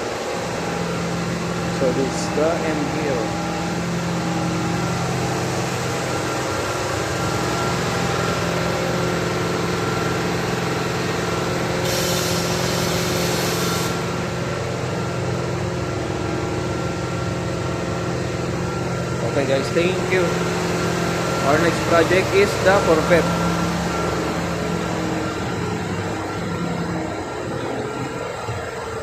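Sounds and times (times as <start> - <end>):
workshop machinery hum: 0.0 - 29.0
hissing air burst: 11.8 - 14.1.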